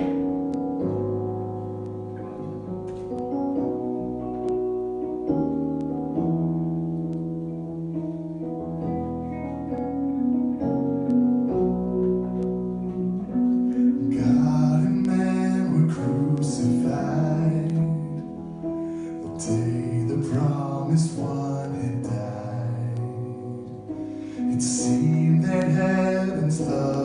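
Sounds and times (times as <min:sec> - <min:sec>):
piano playing slow chords: 0:00.0 - 0:27.0
person singing: 0:13.8 - 0:27.0.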